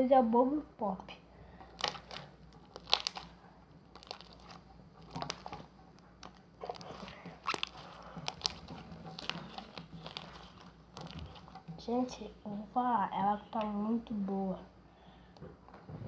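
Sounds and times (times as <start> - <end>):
wet pops and crackles: 1.7 - 11.7
slime squeezed by hand: 1.8 - 5.6, 6.6 - 11.5.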